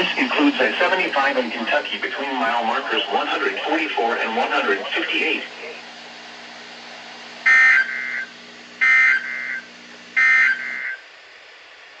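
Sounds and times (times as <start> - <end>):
two-tone digital warble bursts: 7.5 - 11.0.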